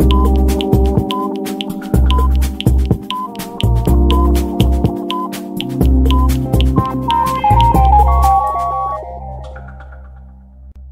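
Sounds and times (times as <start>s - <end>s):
electronic music with drum beat: 0.0s - 10.2s.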